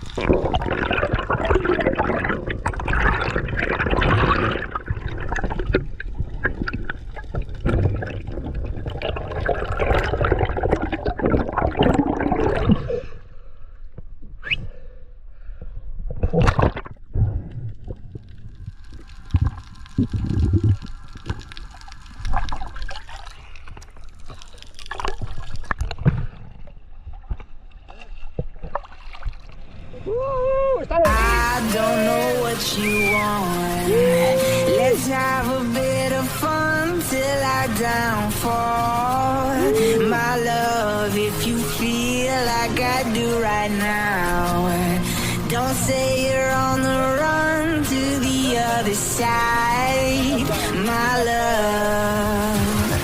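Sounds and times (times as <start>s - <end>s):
water sloshing and gurgling: 0.0s - 14.6s, 15.5s - 30.1s.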